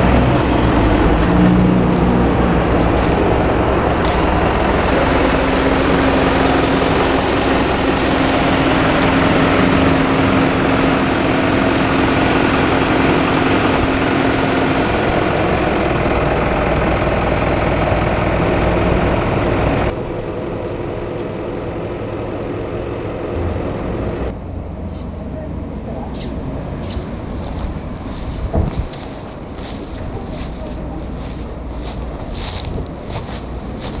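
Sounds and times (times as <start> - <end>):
vehicle engine running: 0.0 - 34.0.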